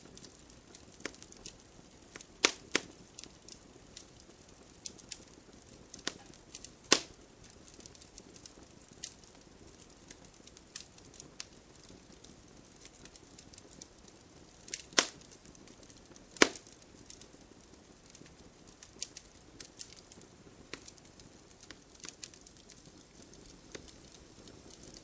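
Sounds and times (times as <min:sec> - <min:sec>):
faint hiss of rain: 0:00.0 - 0:25.0
wood fire crackling and popping: 0:00.0 - 0:25.0.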